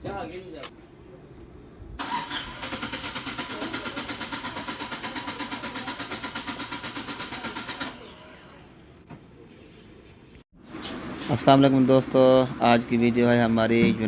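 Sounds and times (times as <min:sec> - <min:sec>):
engine cranking on starter motor: 0:02.0 - 0:08.6.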